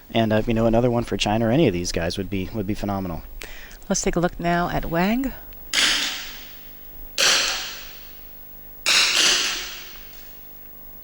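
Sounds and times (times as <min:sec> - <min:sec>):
rifle shots echoing: 0:05.7 - 0:10.3.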